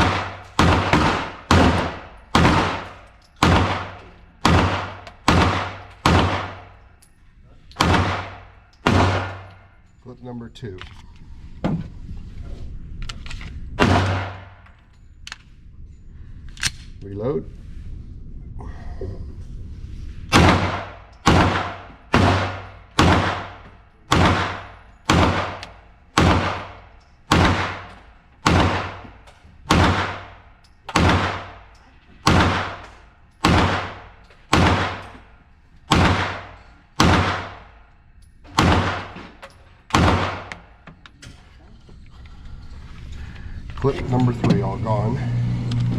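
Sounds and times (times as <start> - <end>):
pistol shots: 0.0 - 6.8, 7.8 - 9.6, 13.8 - 14.6, 20.3 - 35.3, 35.9 - 37.9, 38.5 - 40.8.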